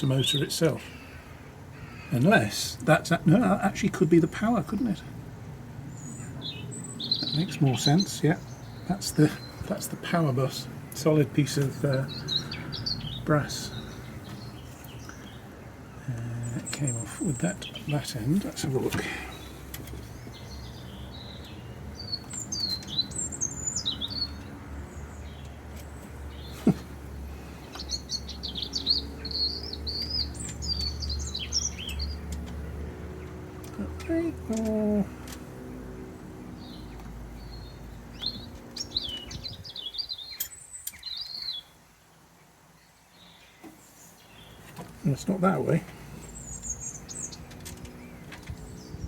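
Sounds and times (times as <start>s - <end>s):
songbird singing: 0.0s - 49.0s.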